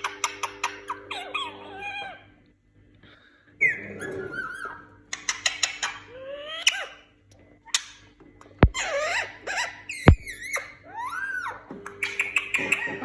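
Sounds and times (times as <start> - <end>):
parakeet chattering: 0.0 - 2.2.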